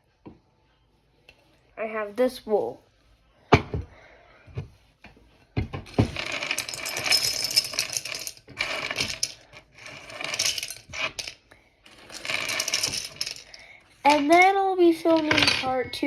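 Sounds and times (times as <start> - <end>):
plastic parts rattling and scraping: 5.8 - 16.0.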